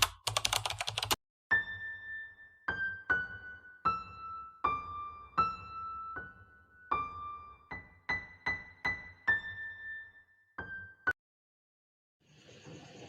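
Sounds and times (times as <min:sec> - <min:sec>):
slow electric piano melody: 0:00.1 - 0:11.2.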